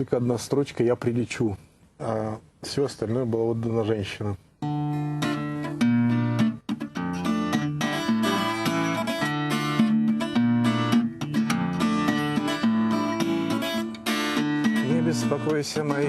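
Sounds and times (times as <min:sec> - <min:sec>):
acoustic guitar plucking: 0:04.6 - 0:16.0.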